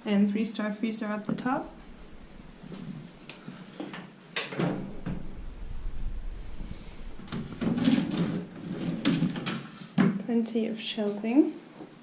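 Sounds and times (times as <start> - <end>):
low rumble: 1.2 - 3.7, 4.6 - 9.6.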